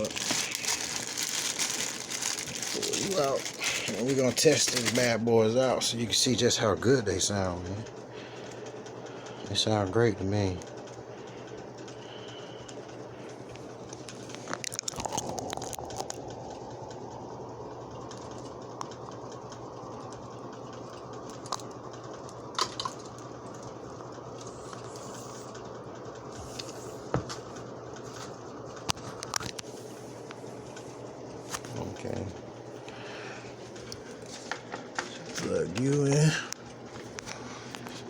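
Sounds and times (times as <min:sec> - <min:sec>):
packaging rustling: 0:00.0 - 0:05.3
steady hum: 0:00.0 - 0:38.0.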